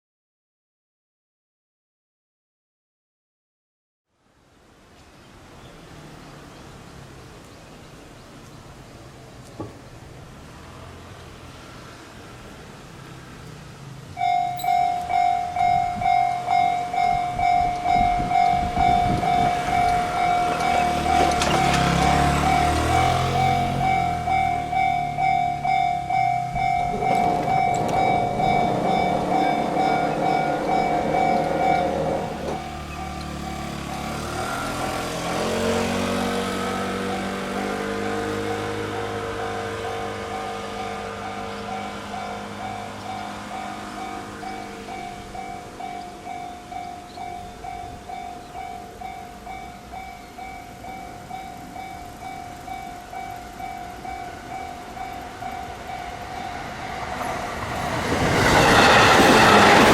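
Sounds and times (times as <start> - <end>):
vehicle engine hum: 10.1 - 46.3
level crossing bell ringing: 14.2 - 34.2
level-crossing warning bell ringing: 14.2 - 59.9.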